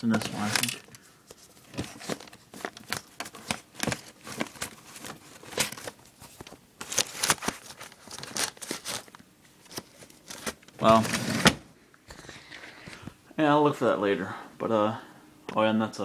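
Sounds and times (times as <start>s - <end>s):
papers rustling in a drawer: 0.0s - 11.6s.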